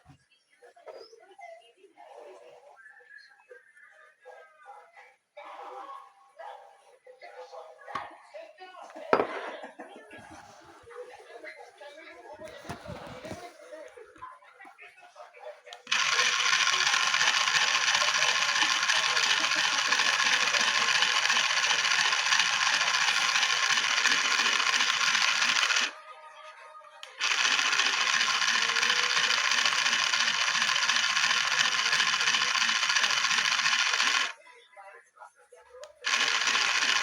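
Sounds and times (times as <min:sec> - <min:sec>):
toy washing machine rattling buzz: 0:15.8 - 0:25.9, 0:27.0 - 0:34.4, 0:36.0 - 0:37.0.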